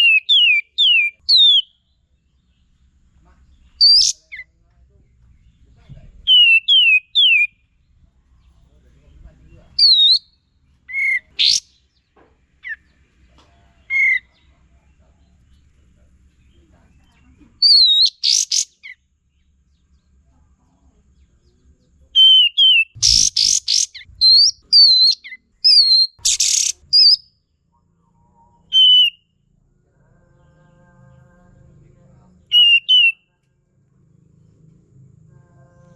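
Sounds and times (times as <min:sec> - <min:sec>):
bird harsh chattering: 0:00.0 - 0:01.8, 0:03.8 - 0:04.4, 0:09.8 - 0:10.3, 0:10.9 - 0:11.8, 0:17.6 - 0:19.0, 0:22.2 - 0:27.2, 0:32.5 - 0:33.2
bird whistled calls: 0:03.8 - 0:04.4, 0:06.3 - 0:07.6, 0:17.6 - 0:19.0, 0:22.2 - 0:27.2, 0:28.7 - 0:29.2, 0:32.5 - 0:33.2.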